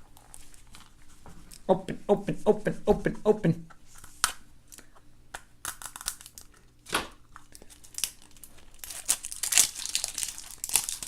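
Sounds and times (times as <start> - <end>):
wrapper tearing and crinkling: 5.7 - 6.7, 7.5 - 11.0.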